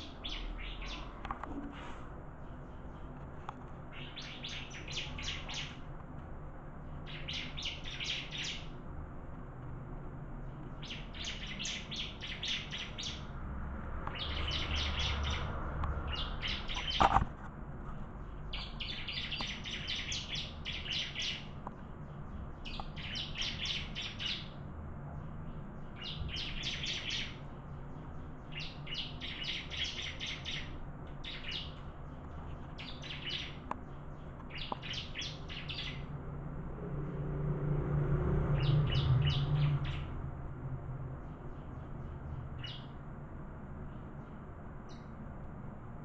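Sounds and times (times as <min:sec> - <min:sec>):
low hum: 0:36.0 - 0:46.0.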